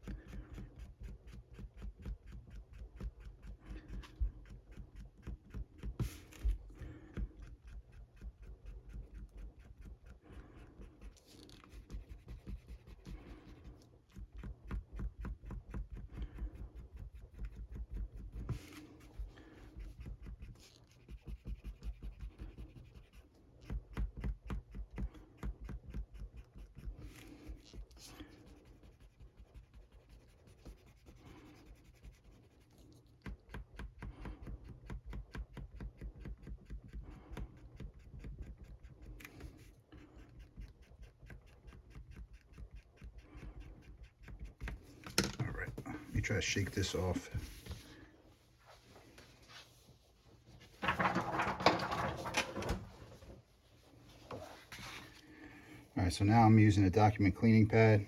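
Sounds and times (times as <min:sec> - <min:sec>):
eraser scrubbing on paper: 0:00.0 - 0:33.4, 0:45.8 - 0:48.1.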